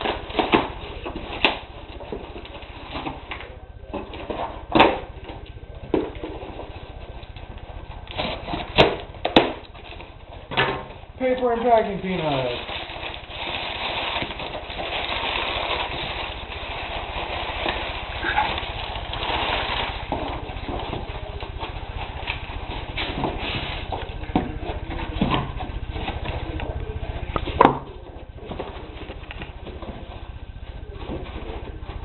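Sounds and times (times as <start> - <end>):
steady low hum: 0.0 - 32.0
packing material rustling: 6.0 - 32.0.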